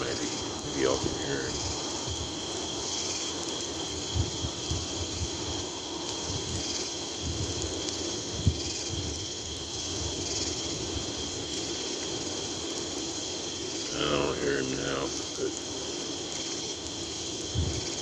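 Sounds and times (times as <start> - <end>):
crickets chirping: 0.0 - 18.0
wind buffeting microphone: 3.7 - 11.3, 17.4 - 18.0.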